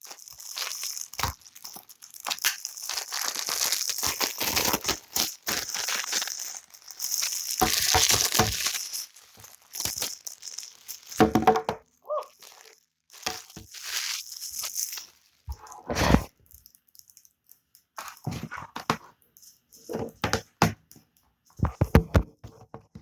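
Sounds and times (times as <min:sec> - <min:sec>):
plastic and paper packaging crinkling: 0:00.0 - 0:20.2.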